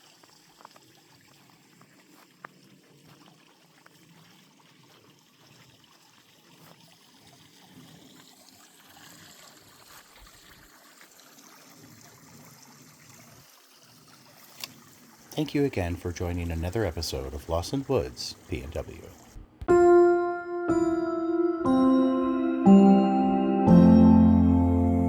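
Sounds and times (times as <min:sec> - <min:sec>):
trickle of water in a pond: 0:00.0 - 0:18.1.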